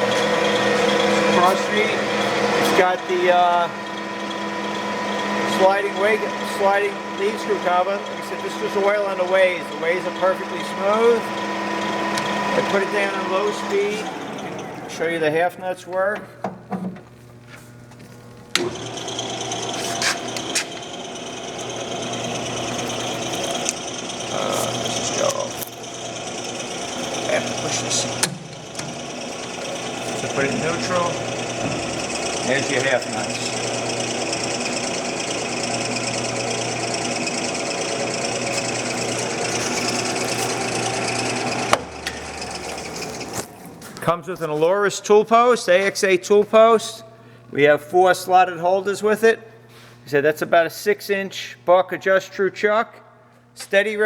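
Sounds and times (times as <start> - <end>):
lathe engaging clack: 0.0 - 15.0, 18.5 - 44.1
lathe gearing whirring: 0.0 - 16.2, 17.3 - 44.6.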